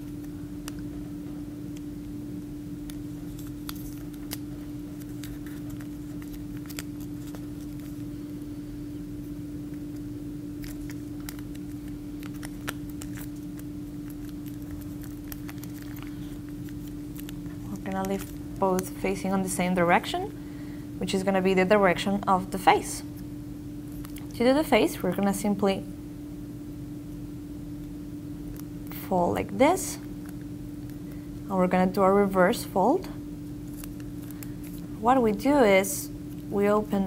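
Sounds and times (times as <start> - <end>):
steady low hum: 0.0 - 37.0
paper being folded: 2.9 - 8.4, 10.6 - 19.2.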